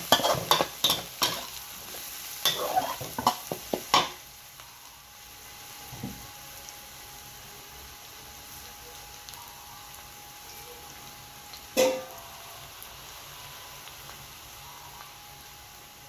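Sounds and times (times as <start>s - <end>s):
metal spatula scraping a pan: 0.0s - 4.1s
food sizzling: 0.0s - 16.0s.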